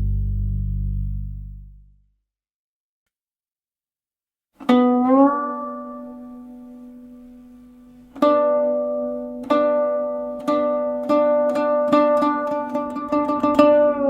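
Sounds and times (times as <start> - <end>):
guqin plucked notes: 4.6 - 14.0.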